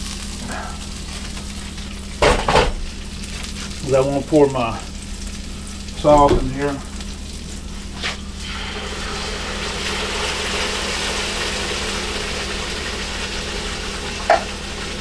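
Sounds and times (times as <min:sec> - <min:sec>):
steady low hum: 0:00.0 - 0:10.2
sauce sizzling in a skillet: 0:00.0 - 0:15.0.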